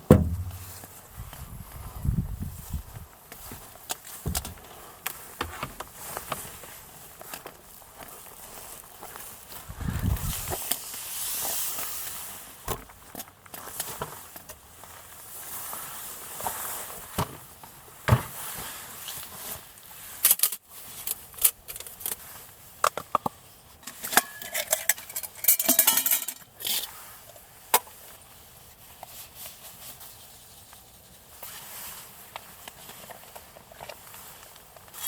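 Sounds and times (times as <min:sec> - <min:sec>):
cookware clinking and scraping: 0:23.9 - 0:26.8.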